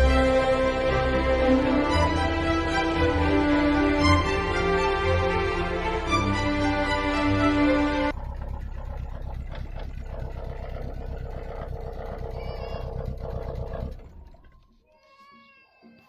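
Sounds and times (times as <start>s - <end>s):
car engine idling: 8.0s - 14.7s
cat meowing: 12.3s - 13.0s.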